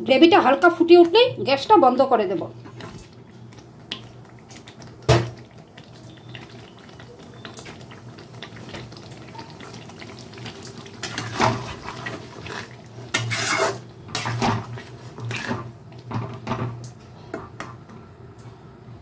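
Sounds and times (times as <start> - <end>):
spatula scraping in pan: 11.0 - 15.7.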